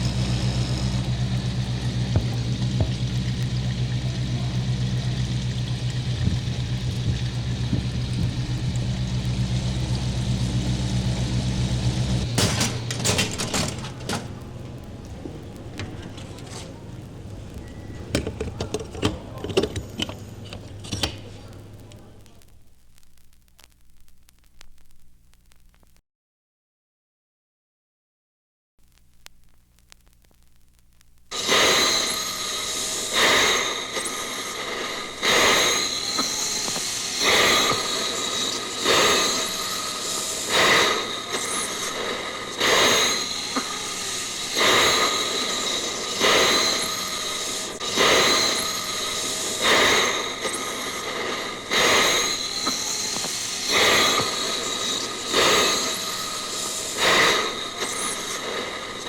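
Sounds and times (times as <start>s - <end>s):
heavy mechanical stroke: 0.0s - 14.3s, 31.3s - 59.0s
machine running with squealing: 0.0s - 14.4s, 31.3s - 59.0s.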